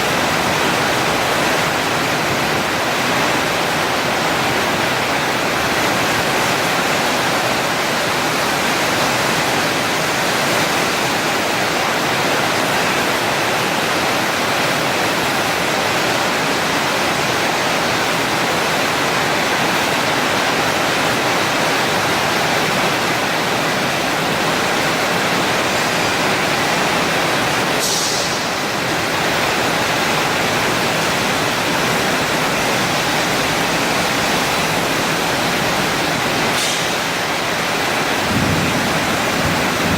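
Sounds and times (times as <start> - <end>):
cutting torch hissing: 27.8 - 28.7.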